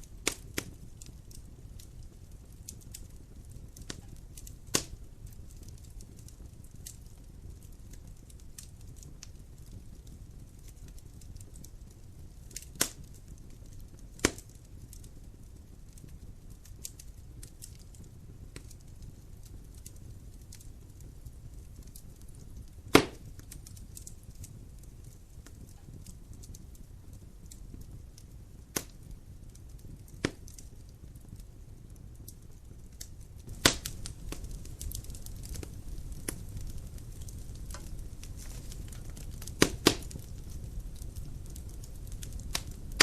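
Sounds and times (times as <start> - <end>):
firewood crackling and popping: 0.0 - 43.0
rumble of fire flames: 0.0 - 43.0.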